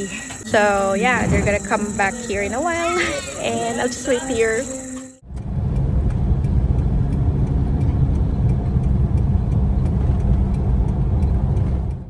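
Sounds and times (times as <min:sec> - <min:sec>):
vehicle engine and road rumble: 0:05.2 - 0:12.0.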